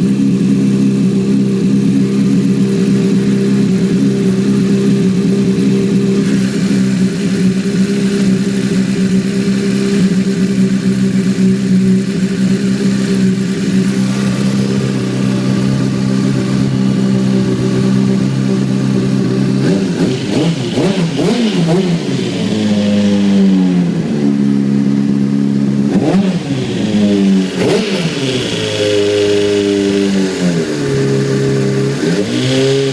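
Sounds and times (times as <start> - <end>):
motorcycle engine idling: 0.0 - 32.9.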